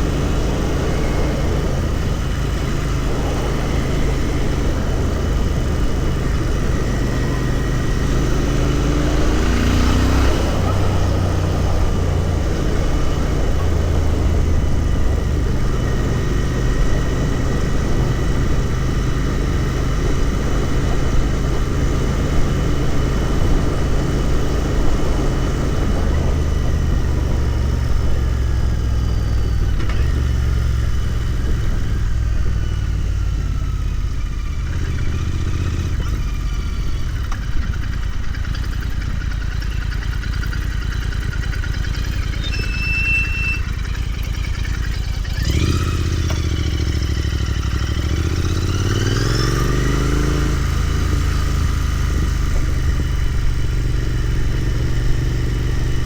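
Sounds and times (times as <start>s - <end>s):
wind rush over microphone: 0.0s - 33.1s
motorcycle engine running: 0.0s - 56.0s.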